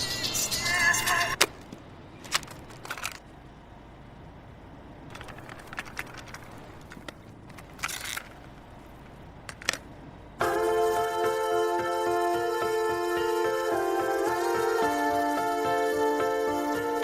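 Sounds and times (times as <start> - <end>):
clicks and crackles: 1.4 - 3.4, 5.1 - 9.9.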